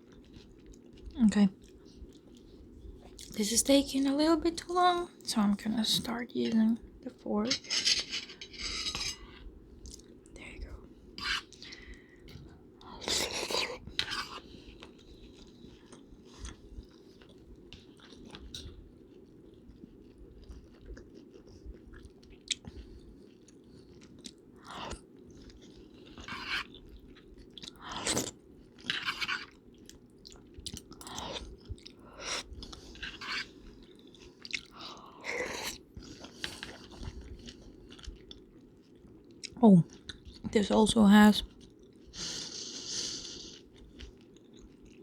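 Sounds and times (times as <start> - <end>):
chewing and biting food: 0.0 - 3.4, 11.2 - 40.5, 43.4 - 45.0
low background hum: 0.0 - 45.0.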